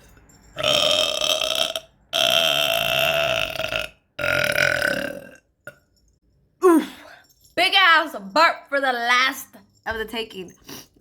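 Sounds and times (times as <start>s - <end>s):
woman burping: 0.6s - 5.8s.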